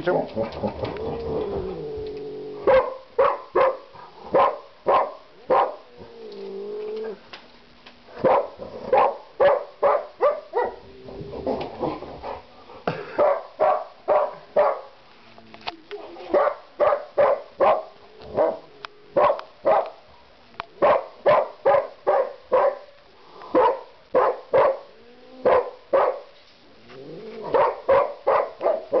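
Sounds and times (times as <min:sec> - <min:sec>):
dog barking: 0:02.7 - 0:05.8, 0:08.2 - 0:10.8, 0:13.2 - 0:15.0, 0:16.3 - 0:20.0, 0:20.8 - 0:22.9, 0:23.6 - 0:26.3, 0:27.5 - 0:29.0.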